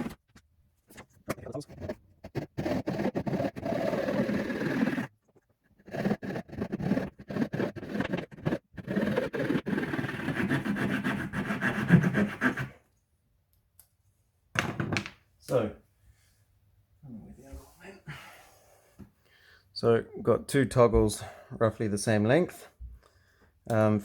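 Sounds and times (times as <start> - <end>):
knife sawing wooden stick: 1.6 - 5.1, 5.7 - 12.8.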